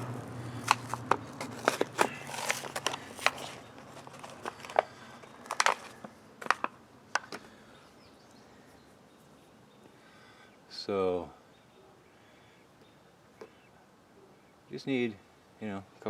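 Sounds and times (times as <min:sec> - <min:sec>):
packaging crinkling and crackling: 0:00.0 - 0:07.5.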